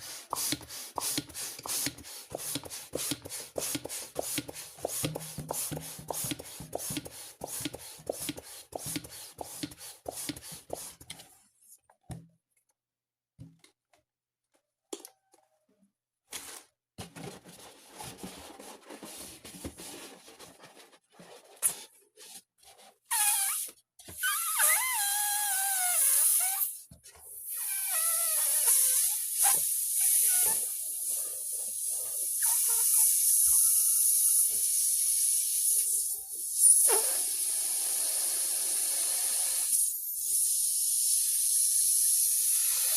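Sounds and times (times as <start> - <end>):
balloon rubbing: 23.1 - 26.8, 27.5 - 30.8
balloon squeal: 23.1 - 26.8, 27.4 - 30.8, 32.3 - 36.0, 36.6 - 38.0.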